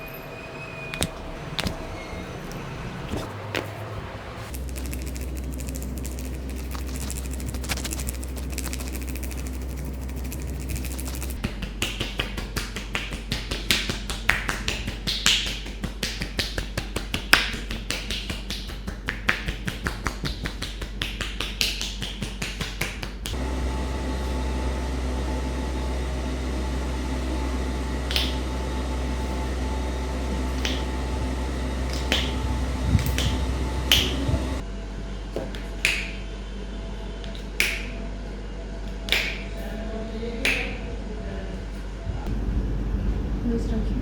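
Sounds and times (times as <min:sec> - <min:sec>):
steady hum: 0:00.0 - 0:11.5, 0:23.1 - 0:44.0
hands slapping and clapping: 0:10.2 - 0:23.4, 0:28.1 - 0:28.5, 0:30.6 - 0:30.9, 0:31.9 - 0:32.4, 0:33.0 - 0:34.4, 0:35.5 - 0:36.2, 0:37.3 - 0:37.9, 0:38.9 - 0:39.6, 0:40.4 - 0:40.8.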